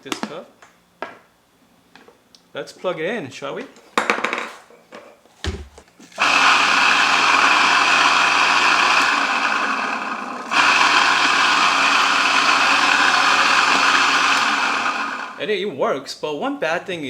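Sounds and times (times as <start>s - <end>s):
coffee grinder motor whirring: 6.1s - 15.4s.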